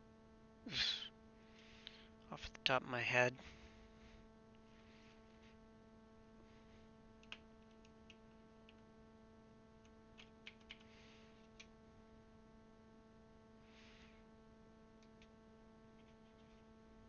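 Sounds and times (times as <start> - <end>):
background hum: 0.0 - 17.0
plastic keyboard clicks: 7.2 - 8.8, 10.2 - 10.9.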